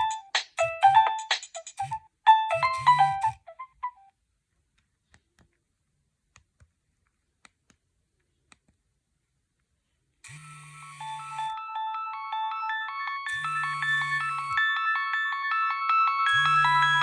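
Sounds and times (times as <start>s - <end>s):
polyphonic ringtone: 0.0s - 4.1s, 10.4s - 17.0s.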